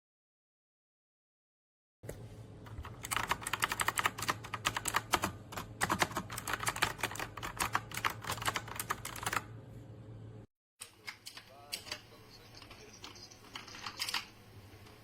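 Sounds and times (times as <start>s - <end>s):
mechanical keyboard typing: 2.7s - 9.5s, 12.6s - 14.3s.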